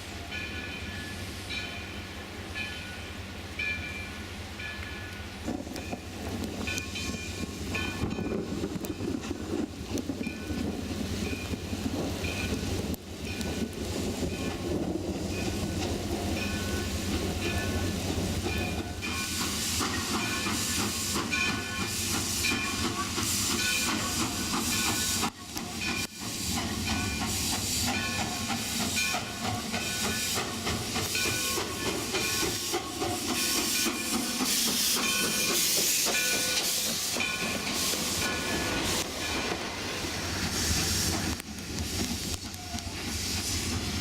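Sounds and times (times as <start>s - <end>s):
steam locomotive hissing: 0.0s - 44.0s.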